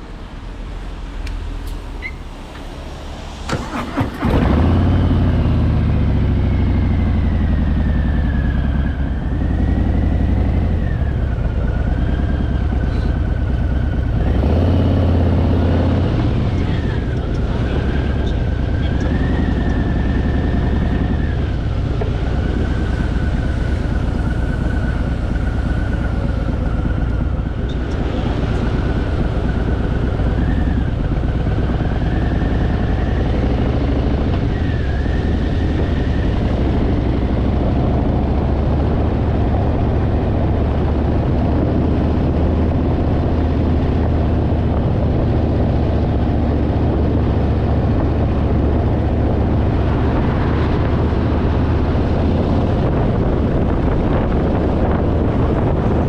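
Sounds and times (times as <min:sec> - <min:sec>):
motorcycle engine droning: 0:01.2 - 0:56.0
thin wavering whistle: 0:02.0 - 0:03.4.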